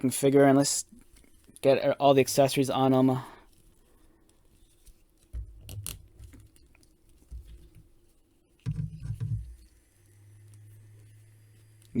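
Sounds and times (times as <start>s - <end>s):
low knocks and handling bumps: 5.3s - 6.6s, 8.6s - 9.6s.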